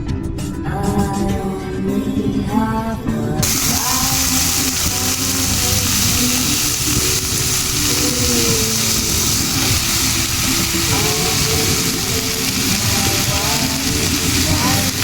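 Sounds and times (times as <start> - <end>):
faint background music: 0.0 - 15.0
food sizzling in hot oil: 3.4 - 15.0.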